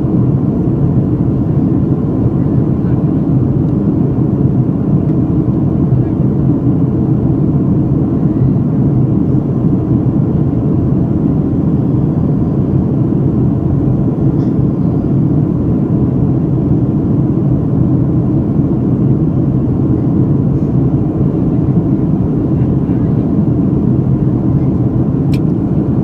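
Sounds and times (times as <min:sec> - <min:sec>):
airliner rumble: 0:00.0 - 0:26.0.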